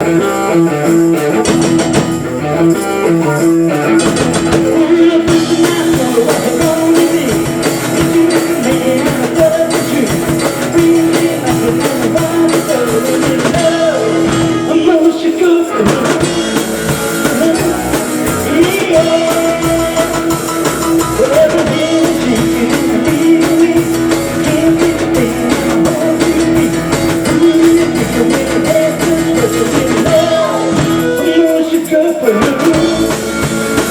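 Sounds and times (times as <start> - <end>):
live rock band playing: 0.0 - 33.9.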